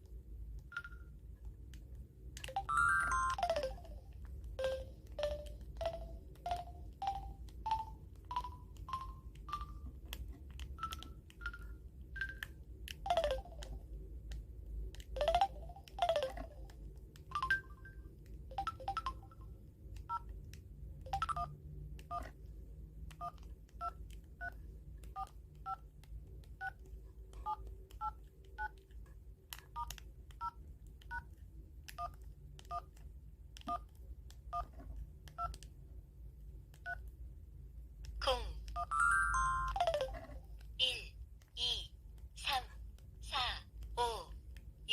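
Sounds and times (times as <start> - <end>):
phone keypad dialing beeps: 2.5 - 3.8, 10.8 - 12.5, 38.8 - 40.3.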